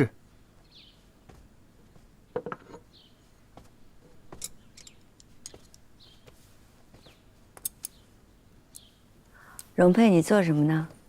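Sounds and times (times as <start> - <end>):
faint bird chirps: 0.6 - 1.1, 6.0 - 9.6.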